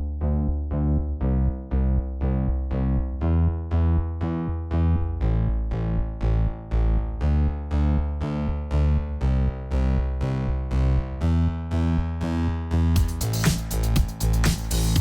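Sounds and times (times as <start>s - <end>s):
synthesizer keyboard chords: 7.7s - 15.0s.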